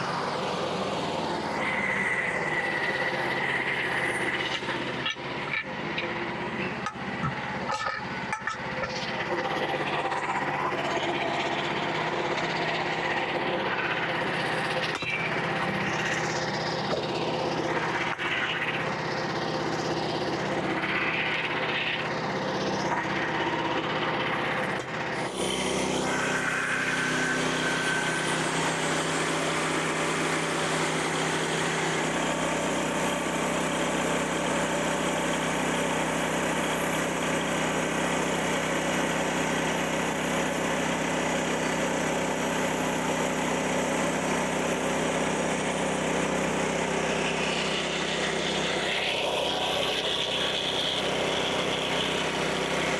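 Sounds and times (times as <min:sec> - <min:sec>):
sawmill engine running: 0:00.0 - 0:52.9.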